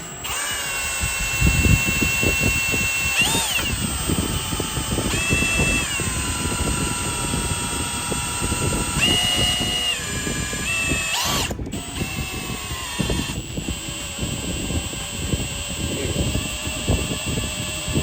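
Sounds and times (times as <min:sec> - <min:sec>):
electric drill whining: 0:00.0 - 0:18.0.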